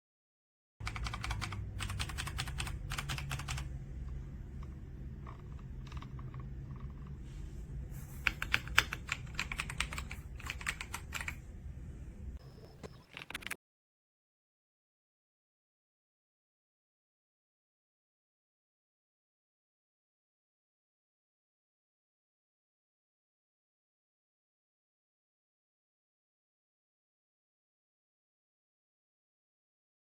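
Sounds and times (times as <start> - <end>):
mechanical keyboard typing: 0.8 - 7.2, 8.2 - 11.4, 12.8 - 13.6
low steady hum: 0.8 - 13.5.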